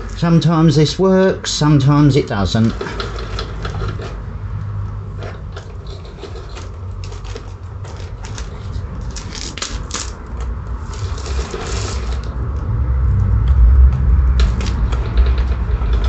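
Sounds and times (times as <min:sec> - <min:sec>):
low rumble: 0:10.4 - 0:16.0.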